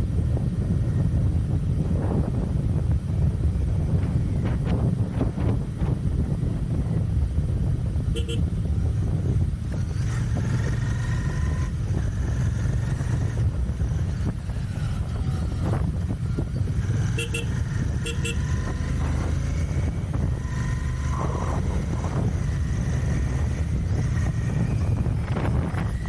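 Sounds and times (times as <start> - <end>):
motorcycle engine running: 0.0 - 26.0
vehicle horn beeps: 8.1 - 8.5, 17.0 - 18.8.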